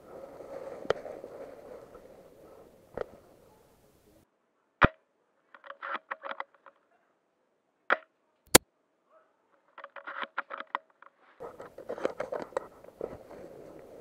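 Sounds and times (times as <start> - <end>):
rustling movement: 0.0 - 3.8, 9.7 - 14.0.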